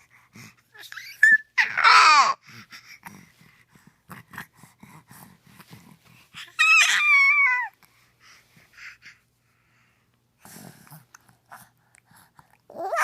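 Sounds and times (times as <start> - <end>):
baby squealing: 0.8 - 2.4, 6.5 - 7.7, 12.8 - 13.0
baby babbling softly: 10.9 - 13.0.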